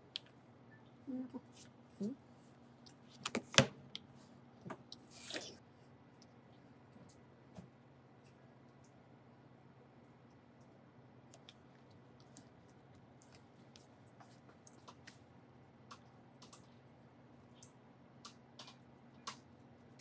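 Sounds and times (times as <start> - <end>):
faint clicks of small tools: 8.2 - 9.0, 15.9 - 16.8.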